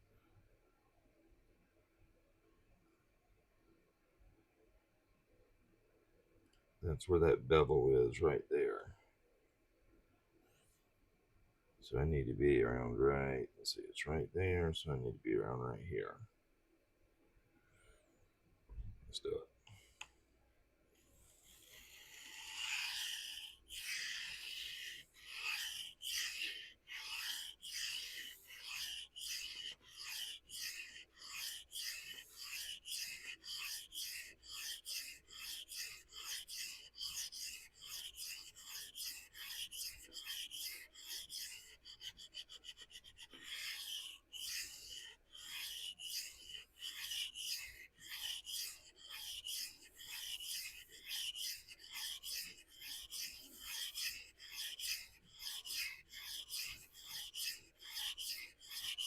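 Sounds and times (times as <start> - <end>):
knife scraping on sharpening stone: 22.2 - 59.0.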